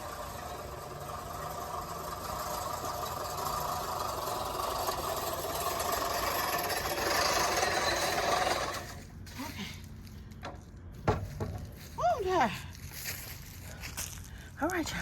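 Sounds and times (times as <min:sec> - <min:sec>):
reel lawn mower whirring: 0:00.0 - 0:09.2.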